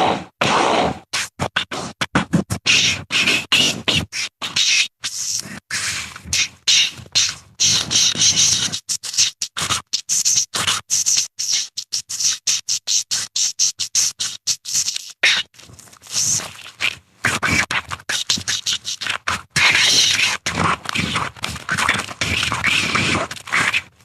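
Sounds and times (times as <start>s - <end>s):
creature clicks and squeaks: 13.8s - 23.9s.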